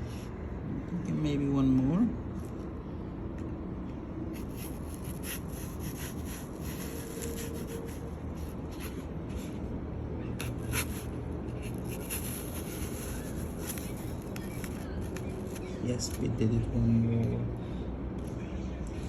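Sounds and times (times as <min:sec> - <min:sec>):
knife cutting and scraping apple: 0:04.3 - 0:09.6, 0:10.4 - 0:15.7.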